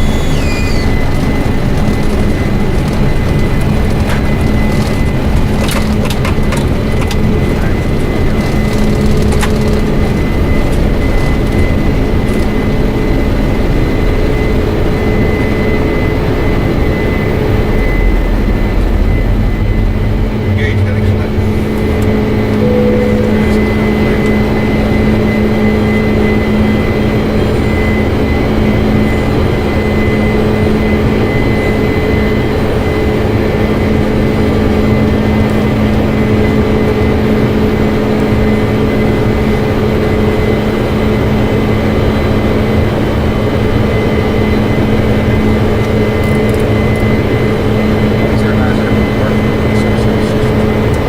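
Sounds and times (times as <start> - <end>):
engine rumble: 0.0 - 37.3
steady hums: 9.6 - 29.6.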